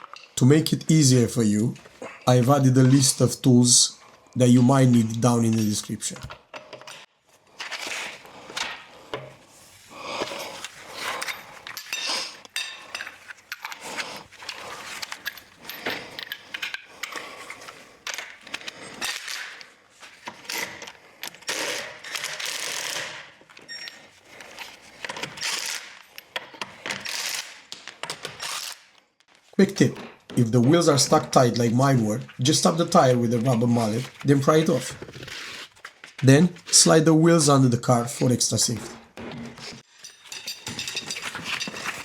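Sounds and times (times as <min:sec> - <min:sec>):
metallic clatter of tools and bolts: 0:10.2 - 0:28.5, 0:39.3 - 0:42.0.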